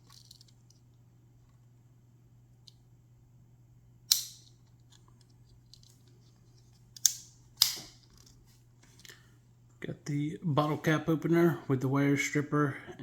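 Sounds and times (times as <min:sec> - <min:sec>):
knife tools snapping open and shut: 0:04.1 - 0:04.5, 0:07.0 - 0:08.0.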